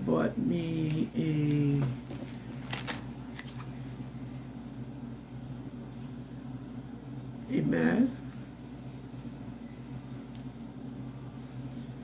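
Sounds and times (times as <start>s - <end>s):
steady low hum: 0.0s - 12.0s
packaging rustling and crinkling: 2.0s - 3.9s.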